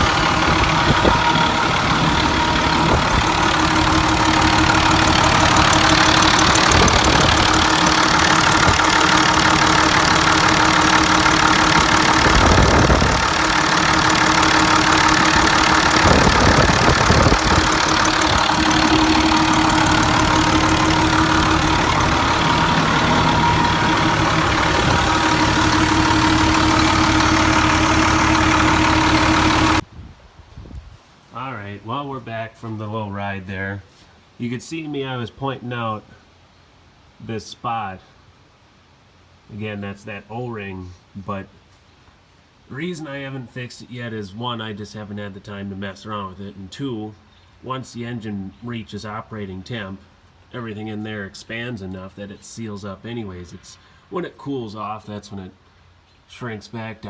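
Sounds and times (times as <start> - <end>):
tractor diesel engine running: 0.0 - 29.8.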